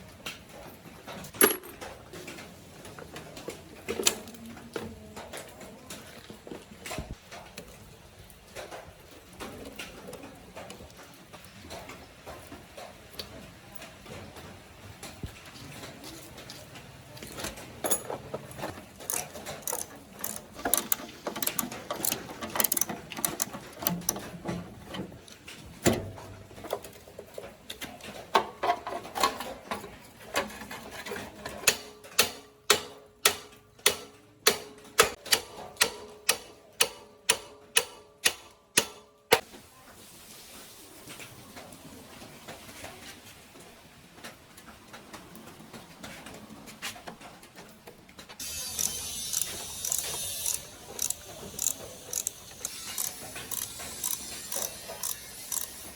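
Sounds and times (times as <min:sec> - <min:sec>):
metallic clicks and knocks: 0:01.2 - 0:02.0, 0:17.3 - 0:25.1.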